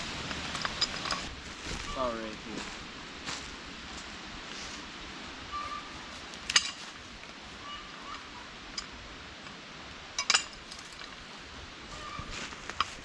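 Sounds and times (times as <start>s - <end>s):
pulley hardware clinking: 0.3s - 1.3s, 6.5s - 6.8s, 10.2s - 11.2s
faint bird chirps: 5.5s - 6.0s.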